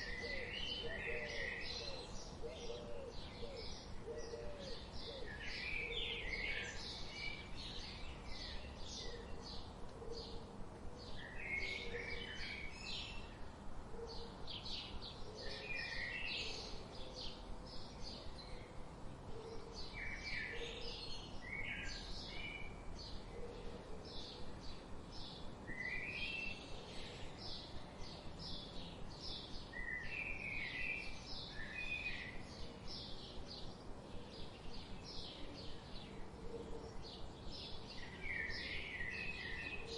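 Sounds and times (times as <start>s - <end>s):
low cooing call: 0.0s - 6.6s, 9.0s - 12.6s, 23.3s - 24.6s, 35.4s - 37.2s
background hiss: 0.0s - 39.9s
songbirds chirping and warbling: 0.0s - 39.9s.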